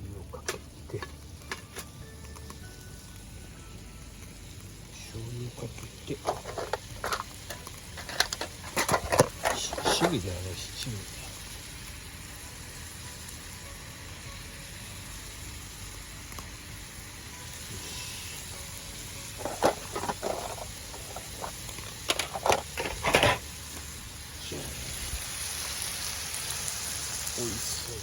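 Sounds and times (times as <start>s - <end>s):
food sizzling in a pan: 0.3s - 28.0s.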